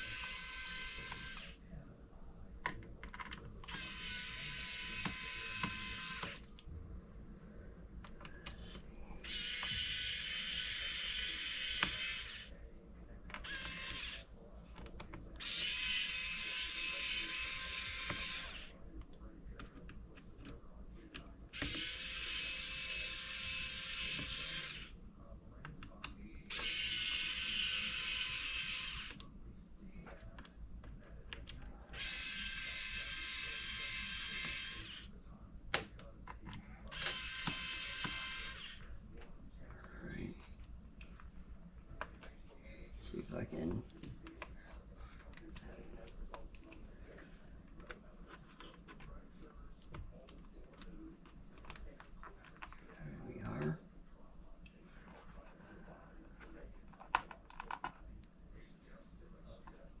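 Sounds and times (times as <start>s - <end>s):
electric screwdriver whirring: 0.0s - 1.6s, 3.7s - 6.4s, 9.3s - 12.4s, 13.4s - 14.2s, 15.4s - 18.7s, 21.6s - 24.9s, 26.5s - 29.2s, 32.0s - 35.0s, 37.0s - 38.8s.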